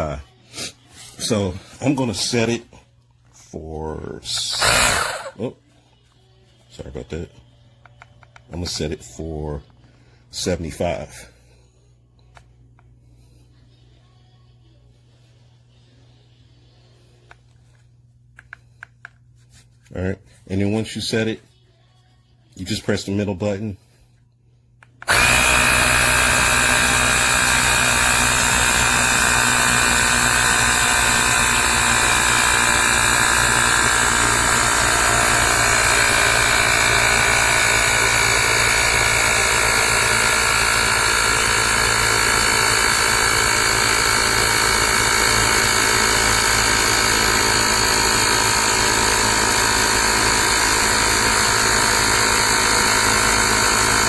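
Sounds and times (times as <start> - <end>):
tire inflator compressor running: 4.2 - 5.6, 24.8 - 54.0.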